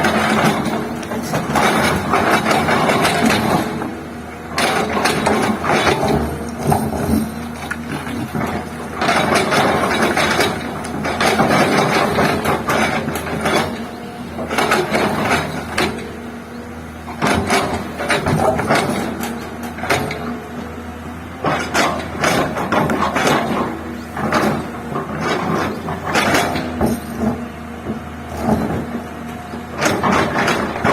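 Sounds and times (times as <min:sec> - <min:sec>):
rattling knocking and scraping: 0:00.0 - 0:16.1
excavator diesel engine running: 0:00.0 - 0:30.9.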